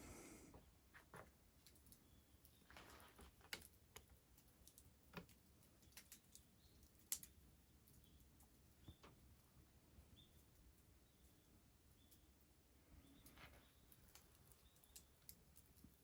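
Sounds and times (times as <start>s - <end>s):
wood fire crackling and popping: 1.1s - 9.2s, 13.1s - 16.0s.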